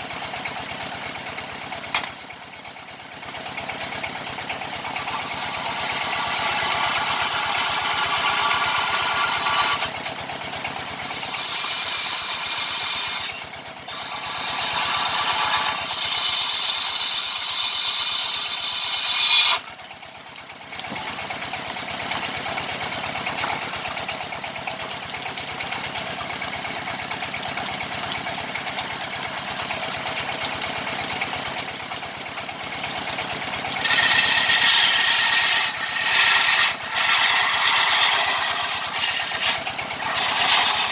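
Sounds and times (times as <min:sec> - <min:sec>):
power tool cutting wood: 0:04.8 - 0:19.7, 0:33.4 - 0:40.9.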